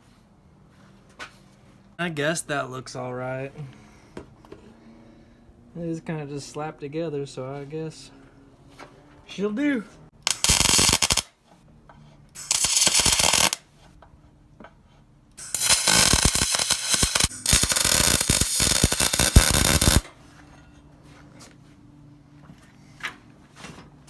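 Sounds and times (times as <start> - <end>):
welding arc crackling: 10.2 - 11.3, 12.4 - 13.6, 15.4 - 20.1.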